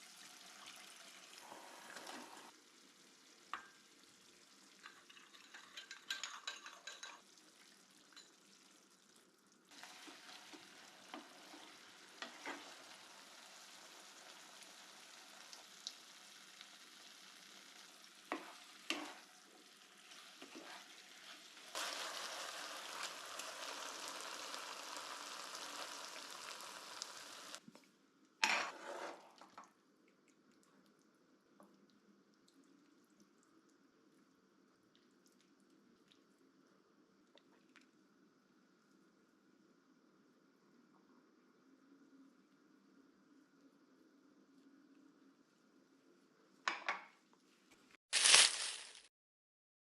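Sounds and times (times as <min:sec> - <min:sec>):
food sizzling in a pan: 0:00.0 - 0:08.8, 0:09.7 - 0:27.6, 0:48.1 - 0:49.1
utensil clinking against pan: 0:04.8 - 0:07.2.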